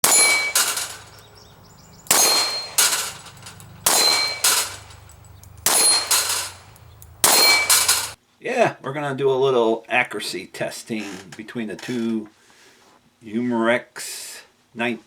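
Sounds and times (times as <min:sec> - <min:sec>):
sharp metallic clangs: 0:00.0 - 0:08.2.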